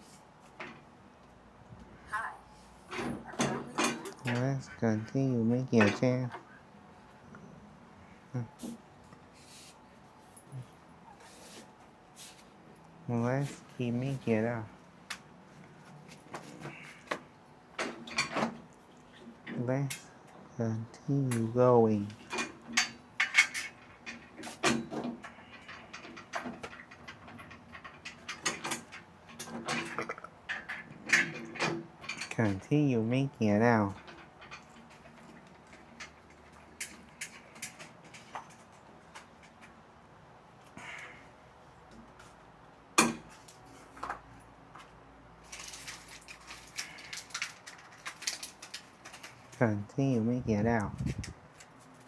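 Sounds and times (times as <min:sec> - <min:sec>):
small clicks and rattles: 0:22.1 - 0:32.5, 0:33.9 - 0:39.8, 0:45.4 - 0:49.6.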